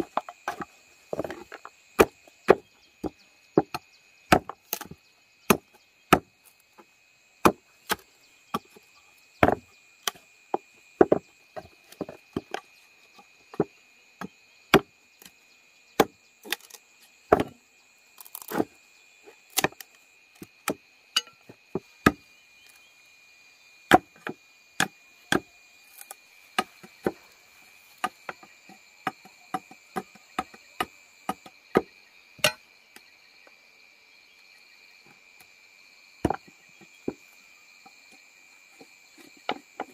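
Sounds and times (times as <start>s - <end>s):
chopping wood: 0.0s - 6.3s, 7.4s - 8.8s, 9.4s - 12.7s, 13.5s - 15.3s, 16.0s - 17.6s, 18.2s - 18.7s, 19.5s - 22.2s, 23.9s - 27.2s, 28.0s - 32.6s, 36.2s - 37.2s
insects trilling: 0.0s - 39.9s.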